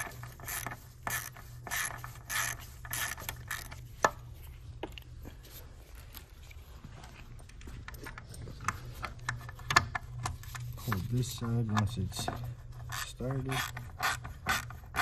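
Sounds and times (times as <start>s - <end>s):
ratchet wrench clicking: 0.0s - 3.8s, 12.9s - 15.0s.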